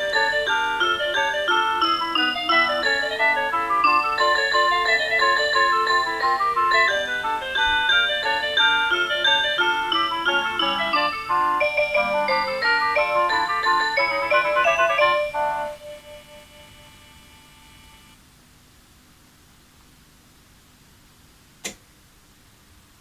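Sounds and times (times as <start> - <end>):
electronic chime-like melody: 0.0 - 17.1.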